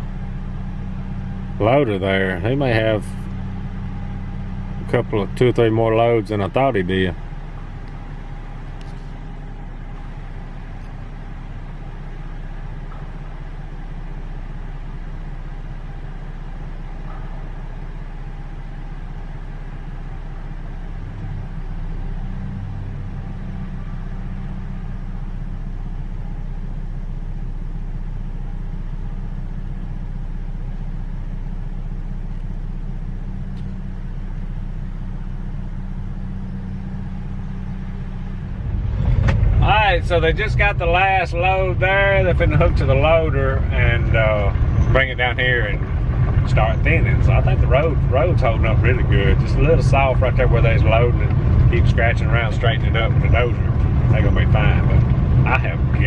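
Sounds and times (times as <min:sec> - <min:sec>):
vehicle engine idling: 0:00.0 - 0:56.0.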